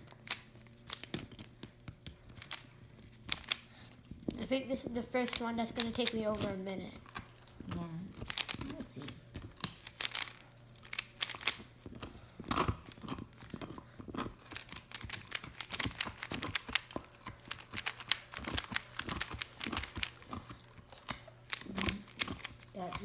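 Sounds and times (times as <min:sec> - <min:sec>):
puzzle cube clicking: 0:00.0 - 0:03.8, 0:05.2 - 0:06.6, 0:08.2 - 0:11.8, 0:14.4 - 0:20.4, 0:21.4 - 0:23.0.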